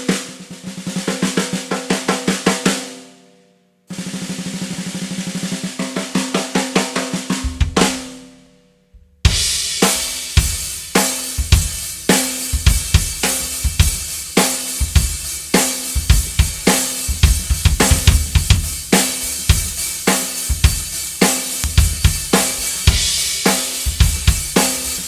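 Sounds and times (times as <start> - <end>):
drum kit groove: 0.0 - 3.0, 3.9 - 8.3, 9.0 - 25.0
snare drum roll: 3.9 - 8.2, 9.3 - 25.0
bass drum: 7.4 - 8.0, 9.0 - 25.0
cymbals: 9.3 - 25.0.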